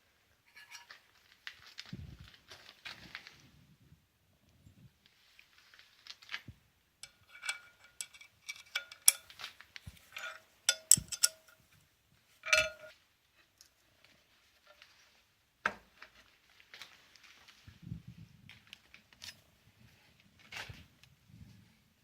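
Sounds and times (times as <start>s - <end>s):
metal tools clinking together: 7.0s - 11.7s, 12.4s - 12.9s.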